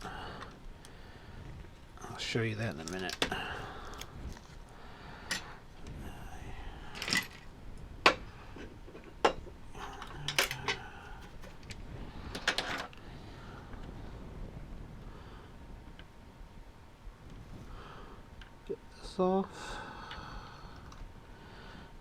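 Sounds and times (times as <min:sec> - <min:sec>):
tools clicking and knocking: 0:10.0 - 0:11.7.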